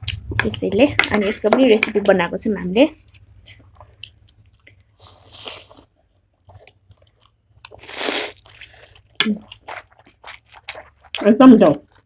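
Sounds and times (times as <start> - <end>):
faint chewing clicks: 3.0 - 5.0, 6.0 - 12.0
mouth noise while eating: 3.4 - 11.2.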